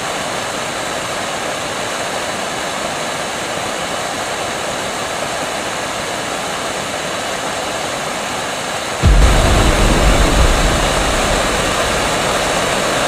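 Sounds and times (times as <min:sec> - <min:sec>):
rocket engine exhaust hissing: 0:09.0 - 0:13.0.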